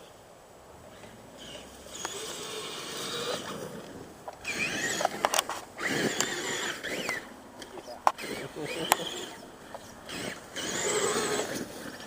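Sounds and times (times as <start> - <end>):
electric motor whining: 0.9 - 7.3, 8.1 - 12.0
sharp clicks: 4.3 - 9.1.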